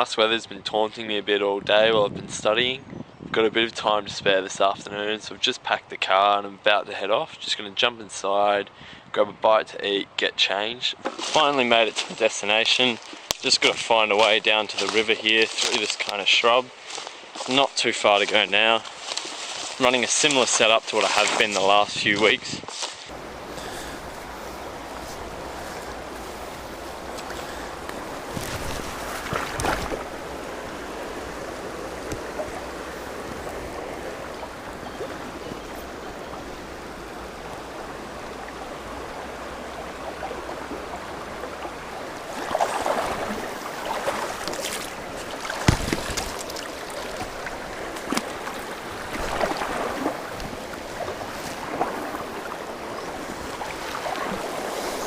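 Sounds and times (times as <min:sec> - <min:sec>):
mountain stream flowing: 0:11.2 - 0:22.0, 0:22.8 - 0:55.0
splashing and knocking: 0:27.1 - 0:30.1, 0:42.3 - 0:52.4.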